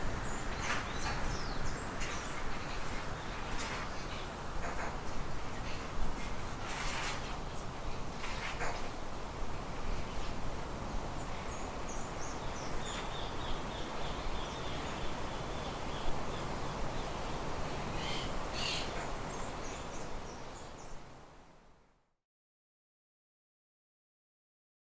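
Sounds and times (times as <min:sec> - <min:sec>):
steady background noise: 0:00.0 - 0:21.8.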